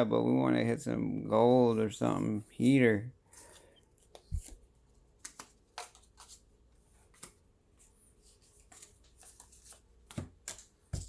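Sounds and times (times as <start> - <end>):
trading cards flipped through: 3.4 - 6.4, 7.0 - 7.4.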